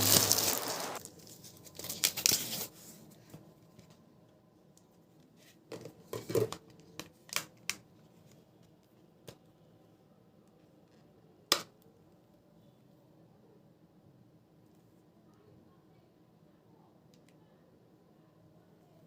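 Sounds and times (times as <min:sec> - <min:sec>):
packaging rustling: 0:00.0 - 0:02.7.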